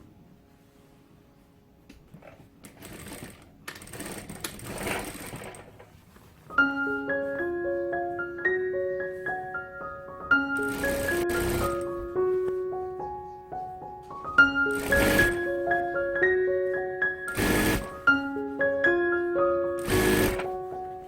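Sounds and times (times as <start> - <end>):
sewing machine stitching: 2.2 - 5.9, 10.6 - 11.8, 14.7 - 15.6, 17.3 - 18.1, 19.8 - 20.6
plucked keyboard-like music: 6.5 - 21.0.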